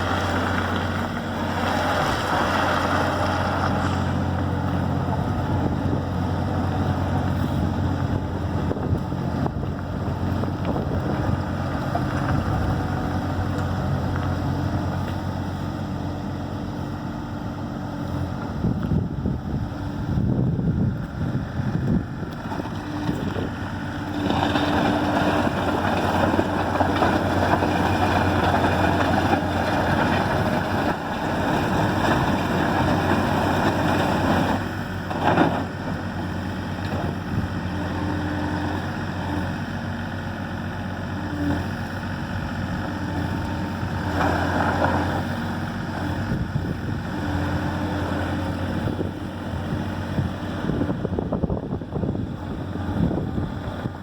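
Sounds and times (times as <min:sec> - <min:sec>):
excavator engine running: 0:00.0 - 0:54.0.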